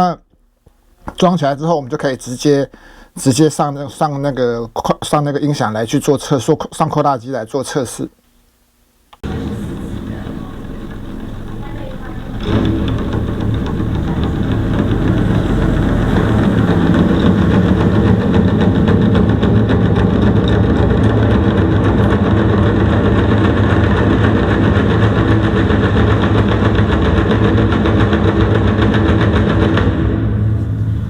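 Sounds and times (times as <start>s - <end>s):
loudspeaker playing bass rumble: 9.2s - 25.3s.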